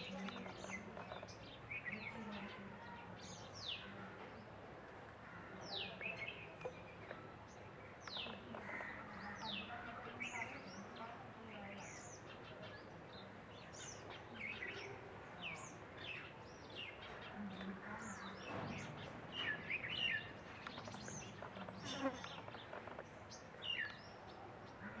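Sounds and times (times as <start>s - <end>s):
small birds chirping: 0.0s - 25.0s.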